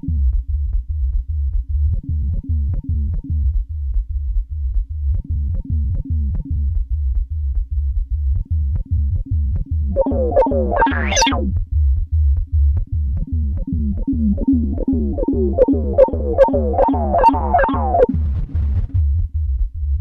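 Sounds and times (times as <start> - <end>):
low kick-like pulse: 0.0 - 20.0
synthesizer sequenced pattern: 8.8 - 18.4
short falling synth tones: 9.9 - 11.5, 13.7 - 18.2.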